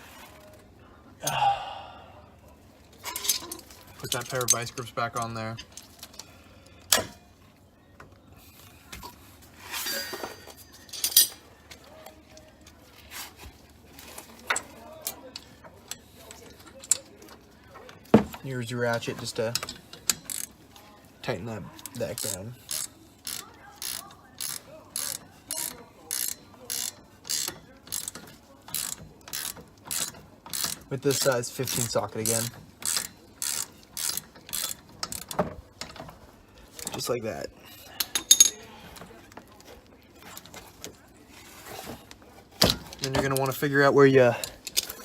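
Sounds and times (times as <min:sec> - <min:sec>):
hand ratchet clicking: 0:18.9 - 0:20.6, 0:21.8 - 0:36.0.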